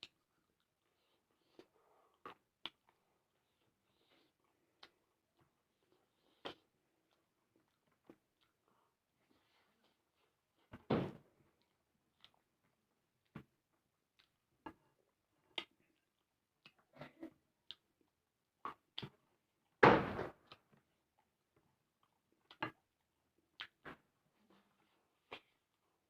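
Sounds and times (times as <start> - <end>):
mouth smacks while eating: 1.4 - 5.0, 15.5 - 18.0, 18.6 - 19.2, 22.0 - 22.8, 23.6 - 23.8, 25.2 - 25.7.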